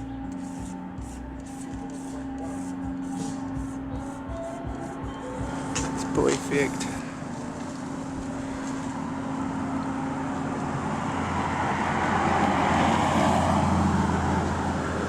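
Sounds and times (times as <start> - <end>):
motor vehicle passing by: 6.8 - 15.0.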